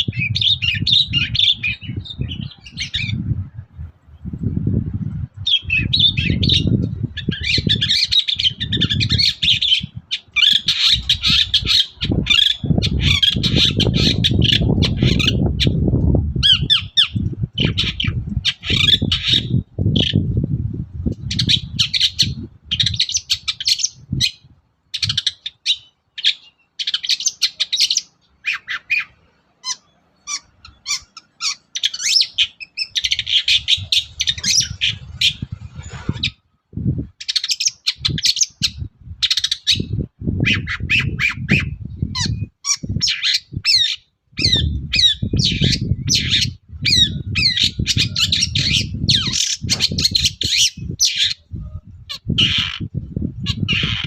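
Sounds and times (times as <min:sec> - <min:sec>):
shrike singing harsh chatters: 0:05.5 - 0:15.8, 0:16.4 - 0:20.2, 0:25.0 - 0:36.4, 0:37.3 - 0:54.0.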